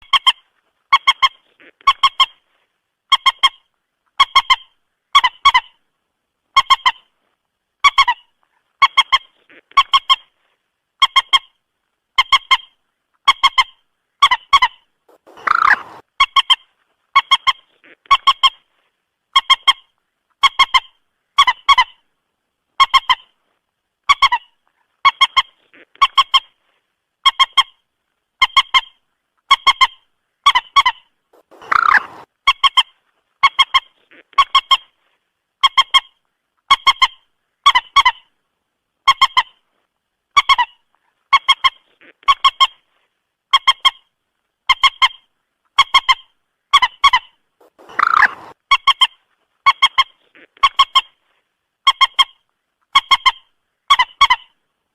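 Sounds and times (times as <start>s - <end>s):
moorhen honking calls: 15.1s - 16.0s, 31.4s - 32.3s, 47.6s - 48.6s.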